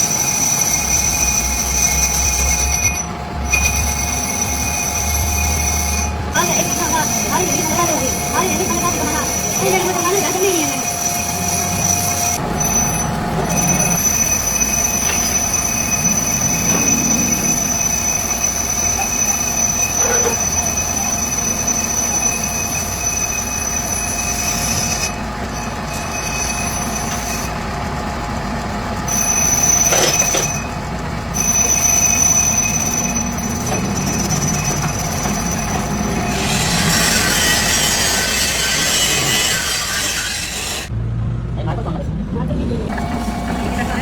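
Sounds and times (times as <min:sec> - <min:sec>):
high-pitched machine squeal: 0:00.0 - 0:40.9
machinery hum: 0:00.0 - 0:44.0.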